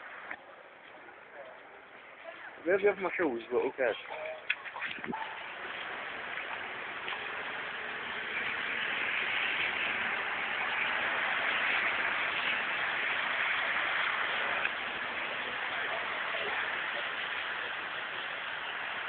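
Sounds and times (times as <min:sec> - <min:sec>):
water rushing hiss: 0:04.7 - 0:19.0.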